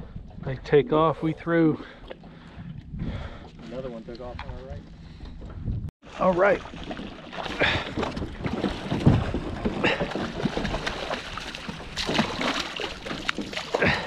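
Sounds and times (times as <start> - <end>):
wind buffeting microphone: 0.0 - 5.9.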